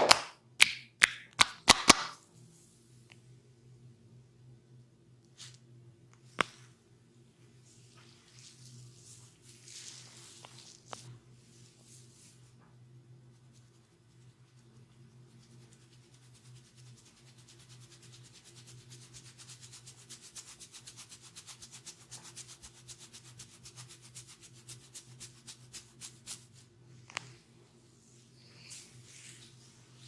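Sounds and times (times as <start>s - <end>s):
sharp snap: 0.0s - 2.2s
hands rubbing over skin: 7.6s - 12.5s, 15.3s - 27.4s, 28.0s - 30.0s.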